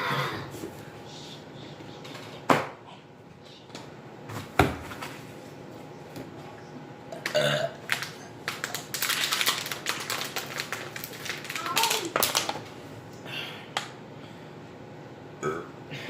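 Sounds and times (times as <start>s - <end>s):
men burping: 7.2s - 7.8s, 15.4s - 15.7s.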